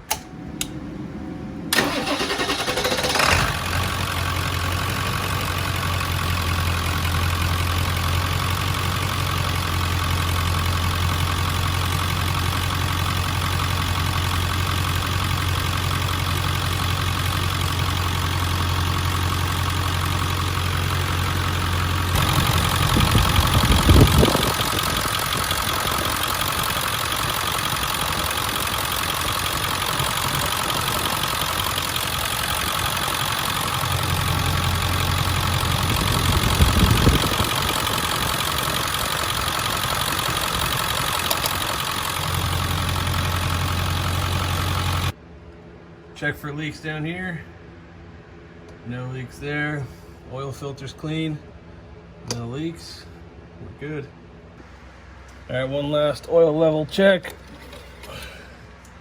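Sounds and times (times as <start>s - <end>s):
diesel engine idling: 0.0s - 45.2s
starter cranking engine: 0.0s - 45.2s, 57.0s - 59.0s
engine revving sweep: 0.1s - 5.6s.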